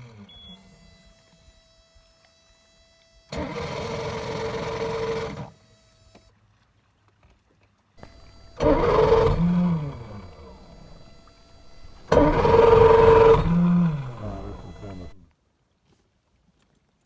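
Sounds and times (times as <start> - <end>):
outboard motor cranking: 0.0 - 6.4, 8.0 - 15.2.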